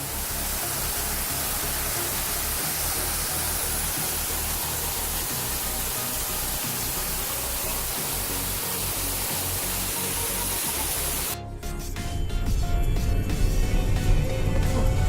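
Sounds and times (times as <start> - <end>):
waterfall rushing: 0.0 - 11.4.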